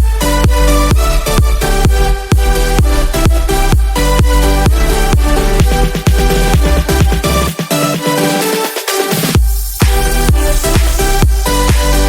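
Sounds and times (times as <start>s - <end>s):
kick drum: 0.0s - 8.2s, 8.8s - 12.0s
electronic dance music: 0.0s - 12.0s
sustained synth chords: 0.2s - 7.6s.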